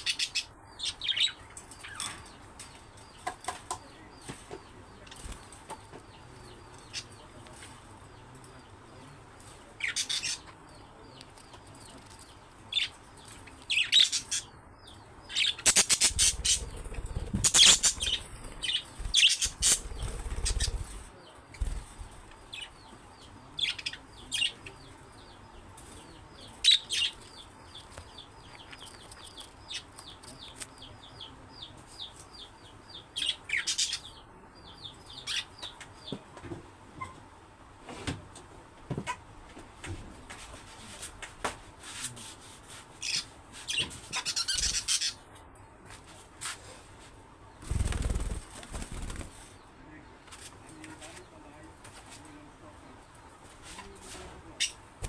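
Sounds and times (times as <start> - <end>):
budgerigars chirping: 0.0 - 2.2, 13.7 - 14.5, 15.3 - 21.0, 43.0 - 45.2
wing-flapping: 15.7 - 22.2, 47.6 - 49.5.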